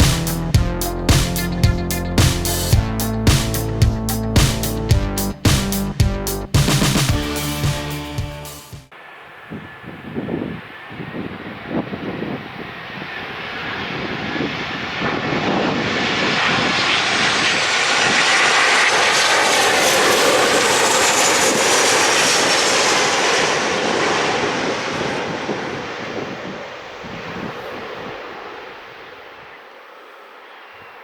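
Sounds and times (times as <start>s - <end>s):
high whine falling in pitch: 0.0s - 29.6s
airliner passing close by: 8.9s - 31.0s.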